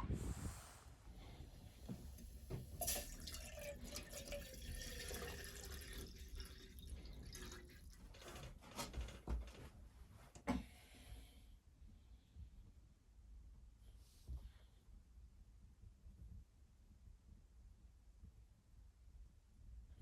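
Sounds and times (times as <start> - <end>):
water dripping and trickling: 2.2 - 8.7.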